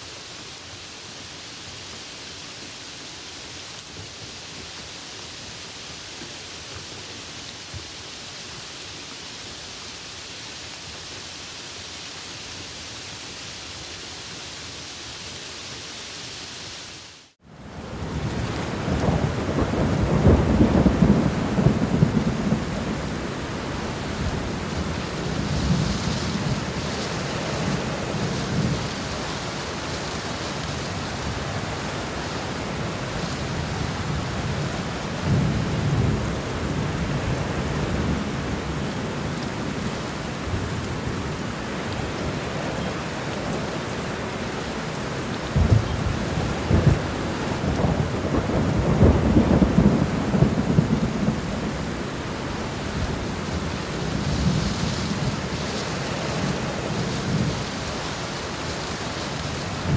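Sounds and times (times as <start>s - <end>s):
steady rain falling: 0.0s - 59.9s
thunder rumbling: 17.8s - 38.8s, 45.5s - 59.9s.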